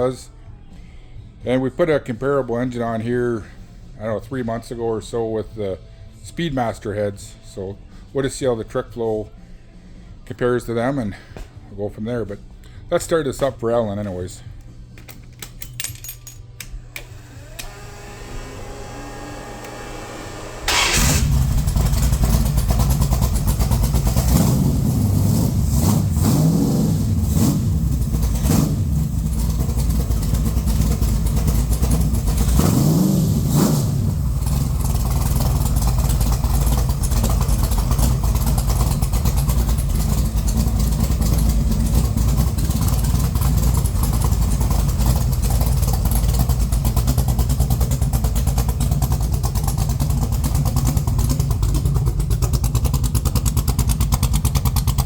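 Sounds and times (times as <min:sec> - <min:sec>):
starter motor cranking: 0:17.0 - 0:24.0
car engine revving and idling: 0:17.0 - 0:55.0.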